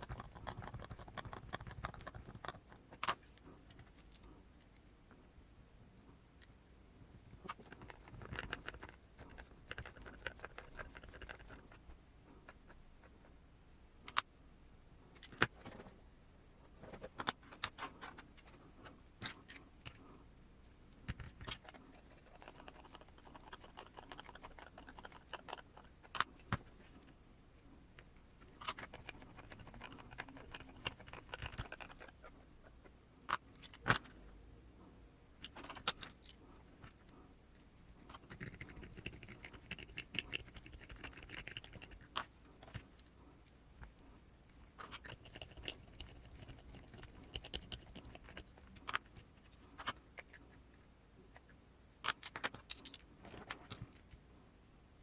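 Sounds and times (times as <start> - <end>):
small parts clicking and tapping: 52.0 - 54.2.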